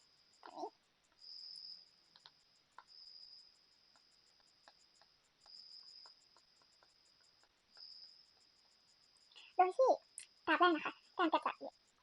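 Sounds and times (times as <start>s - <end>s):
insect trilling: 0.0s - 12.0s
soft clicks: 2.1s - 2.9s.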